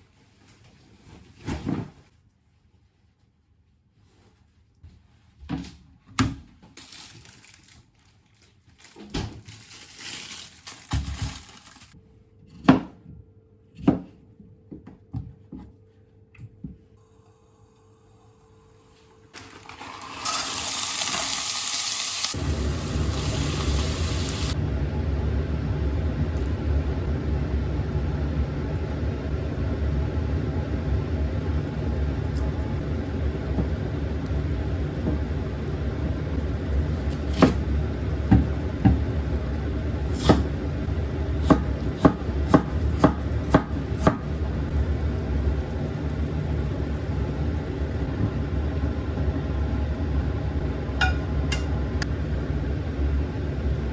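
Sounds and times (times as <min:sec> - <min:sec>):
hiss of rushing water: 0:20.2 - 0:24.6
steady low rumble: 0:24.4 - 0:37.0.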